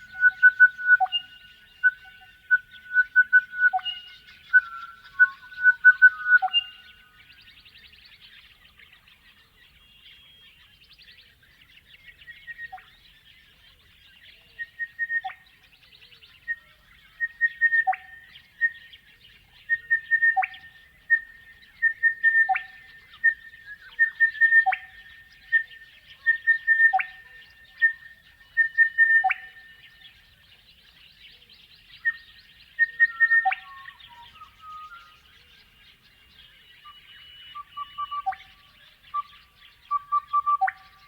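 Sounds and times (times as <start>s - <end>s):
bellbird singing ringing notes: 0.0s - 7.1s
faint bird chirping: 0.0s - 41.0s.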